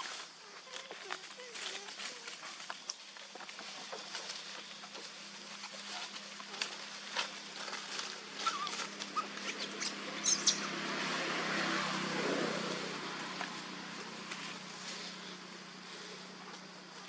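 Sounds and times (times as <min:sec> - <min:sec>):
monkeys squeaking: 0:07.6 - 0:10.9.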